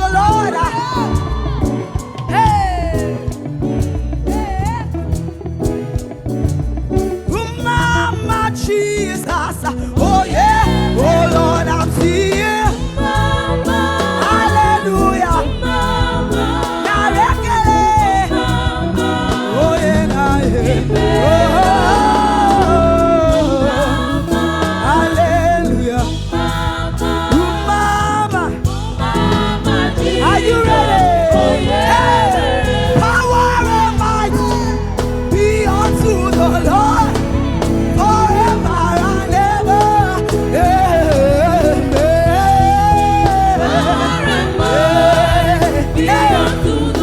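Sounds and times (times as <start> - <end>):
gospel singers with a band: 0.0 - 47.0.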